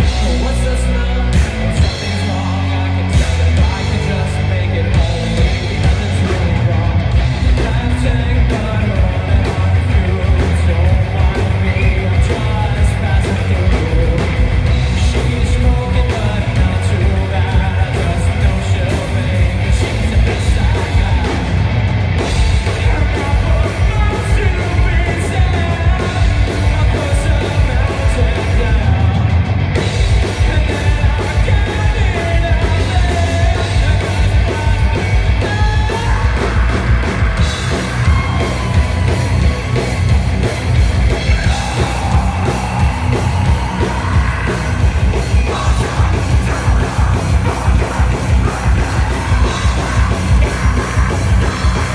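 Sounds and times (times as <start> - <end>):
live rock band playing: 0.0 - 51.9
shouted vocals: 35.4 - 51.9.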